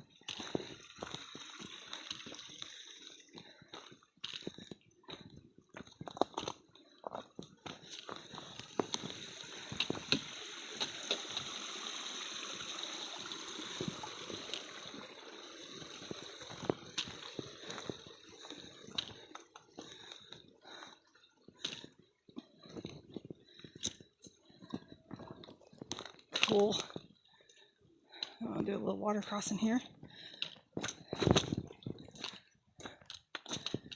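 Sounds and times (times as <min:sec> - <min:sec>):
stream gurgling over rocks: 0:00.0 - 0:04.4, 0:07.6 - 0:22.1
footsteps on rocky trail: 0:00.1 - 0:11.5, 0:16.0 - 0:28.4, 0:29.8 - 0:33.9.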